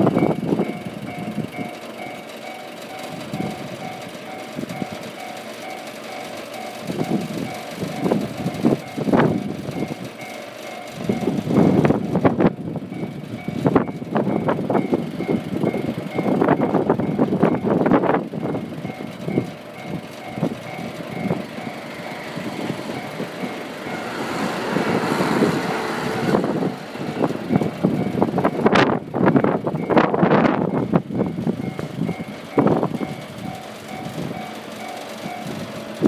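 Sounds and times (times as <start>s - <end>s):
level crossing two-tone alarm: 0.1s - 11.4s.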